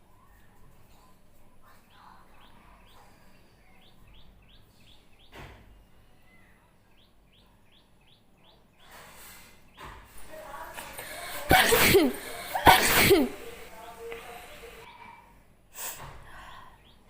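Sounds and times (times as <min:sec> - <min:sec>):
small birds chirping: 0:00.0 - 0:11.3, 0:16.3 - 0:17.0
breathy noise near microphone: 0:08.8 - 0:17.0.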